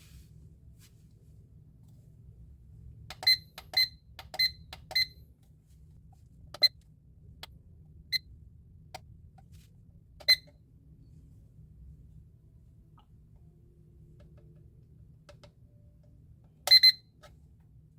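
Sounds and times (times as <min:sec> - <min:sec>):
alarm clock beeps: 0:16.7 - 0:17.1.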